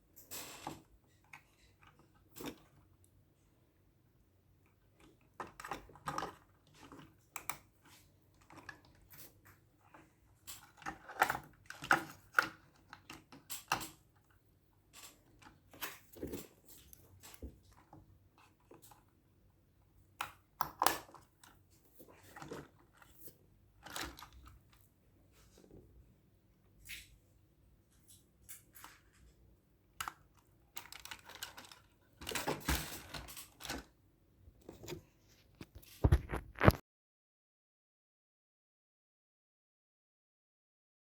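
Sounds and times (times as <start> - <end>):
hands handling plastic packaging: 30.0 - 33.9.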